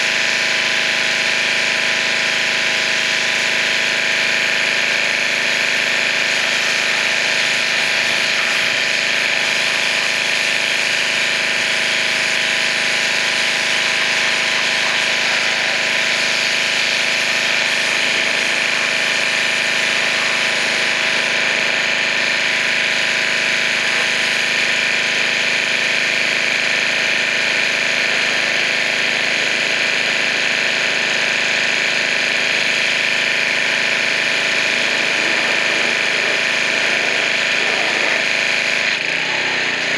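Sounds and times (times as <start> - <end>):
pressure washer motor drone: 0.0 - 39.9
water jet hissing: 5.2 - 24.8, 27.0 - 38.9.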